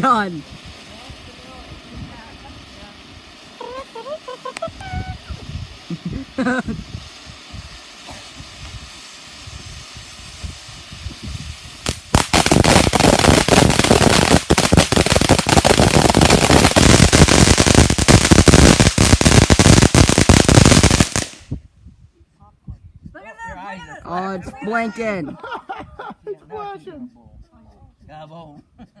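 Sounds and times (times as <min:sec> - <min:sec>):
firework rapid crackle: 0:00.0 - 0:21.6
firework pops: 0:04.4 - 0:06.2, 0:10.4 - 0:21.6.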